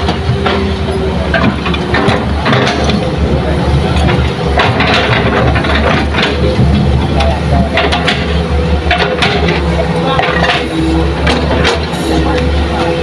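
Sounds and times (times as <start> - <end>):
heavy diesel engine running: 0.0 - 13.0.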